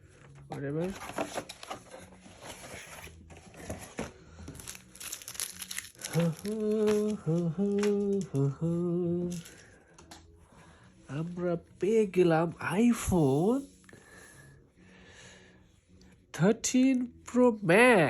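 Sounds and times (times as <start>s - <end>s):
packaging crinkling: 4.5s - 8.4s, 9.3s - 9.6s
man humming: 6.1s - 9.4s.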